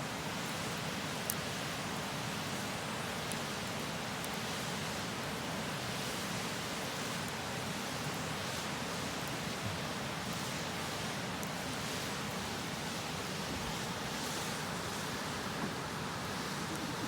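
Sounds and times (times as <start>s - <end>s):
campfire wood popping: 15.4s - 17.0s.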